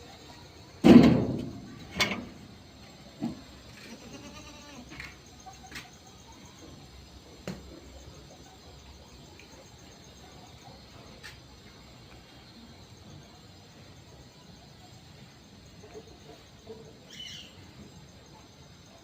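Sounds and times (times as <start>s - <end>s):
goats bleating: 3.8s - 5.0s.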